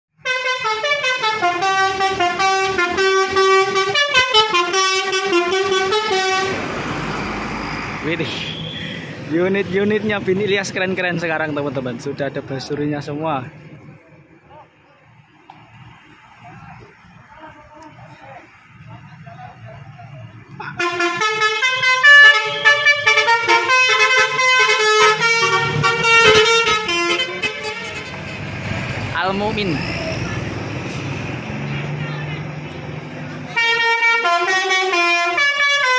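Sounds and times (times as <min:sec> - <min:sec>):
bus horn playing a melody: 0:00.2 - 0:06.6, 0:20.7 - 0:28.6, 0:33.5 - 0:35.9.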